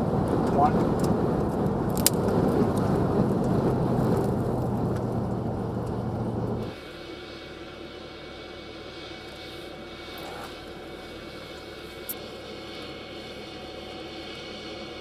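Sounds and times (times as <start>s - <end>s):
car driving fast: 0.0s - 6.8s
wind noise: 0.0s - 6.8s
aircraft engine with high whine: 0.0s - 15.0s.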